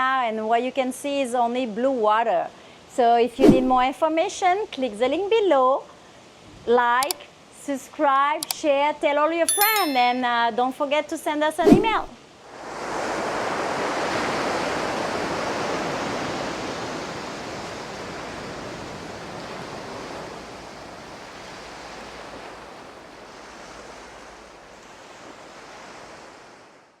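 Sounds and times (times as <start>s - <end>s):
ocean surf washing on beach: 11.6s - 26.8s.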